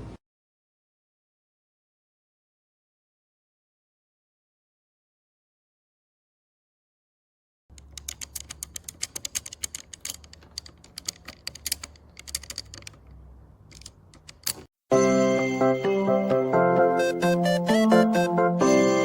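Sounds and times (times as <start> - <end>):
rapid light clicks: 7.7 - 14.7
music: 14.9 - 19.0.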